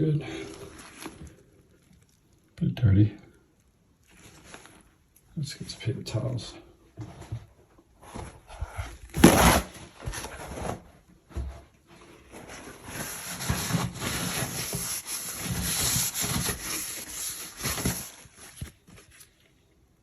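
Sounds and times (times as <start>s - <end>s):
paper towel ripping: 0.4s - 2.1s, 9.2s - 9.8s, 12.8s - 19.4s
paper towels rubbing: 9.2s - 9.7s, 12.4s - 19.2s.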